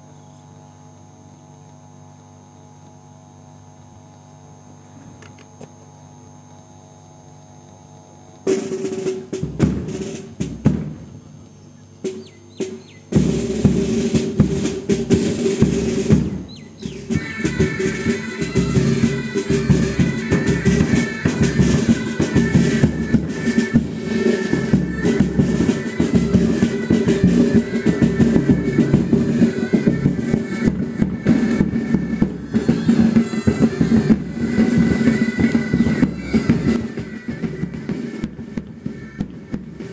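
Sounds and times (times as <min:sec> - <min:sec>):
bagpipes playing held tones: 0:07.9 - 0:10.7, 0:12.0 - 0:39.9
rapid drum beat: 0:08.4 - 0:11.4, 0:12.0 - 0:39.9.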